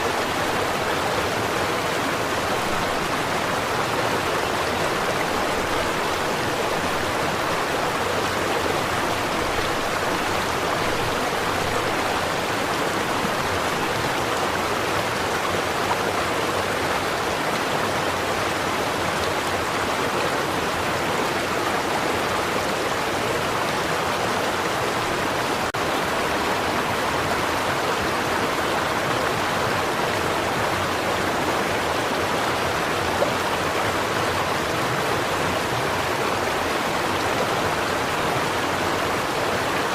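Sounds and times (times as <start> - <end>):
stream flowing over rocks: 0.0 - 39.9.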